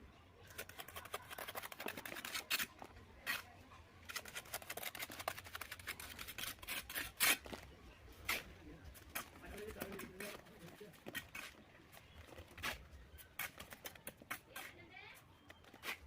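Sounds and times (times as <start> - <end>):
trowel scraping and tapping brick: 0.4 - 7.6.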